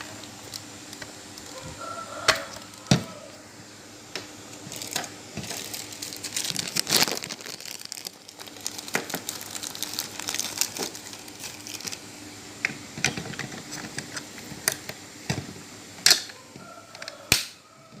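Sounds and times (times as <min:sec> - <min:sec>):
crinkling rustling handling noise: 0:00.0 - 0:03.5, 0:04.4 - 0:12.1.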